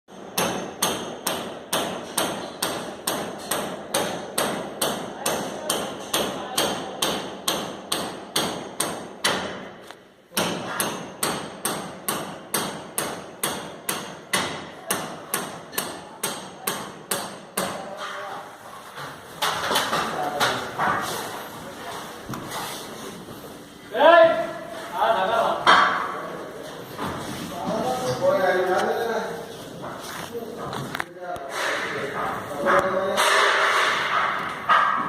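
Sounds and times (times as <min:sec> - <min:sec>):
hammering: 0:00.1 - 0:18.4, 0:19.0 - 0:21.4, 0:25.6 - 0:26.4, 0:31.4 - 0:35.0.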